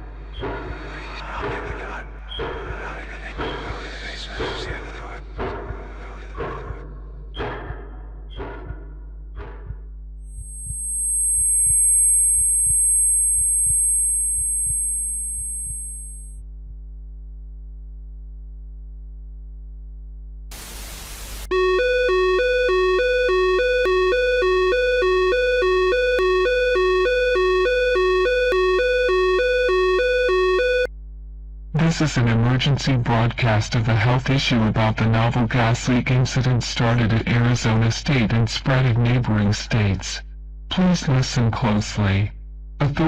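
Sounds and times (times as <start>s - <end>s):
high ringing tone: 10.3s - 16.4s, 21.5s - 30.9s
two-pitch electronic alert tone: 10.3s - 16.4s, 21.5s - 30.9s
burst of static: 20.5s - 21.5s.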